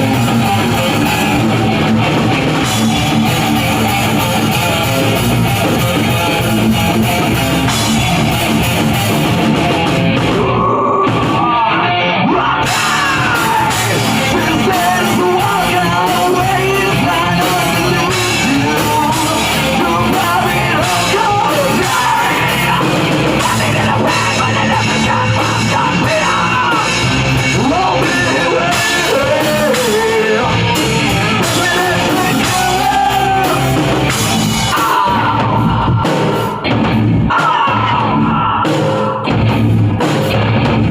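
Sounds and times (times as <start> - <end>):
heavy rock band music: 0.0 - 40.9
person singing and yelling: 10.2 - 39.3.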